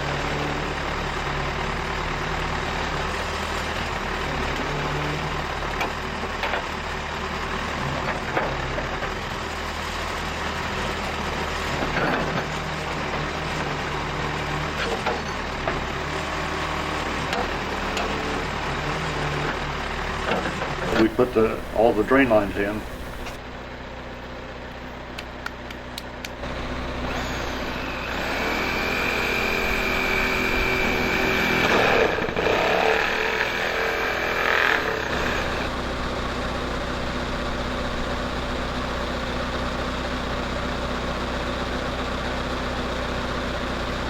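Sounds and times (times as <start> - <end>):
high whine: 20.9 - 23.4, 35.1 - 38.7
engine running: 20.9 - 44.0.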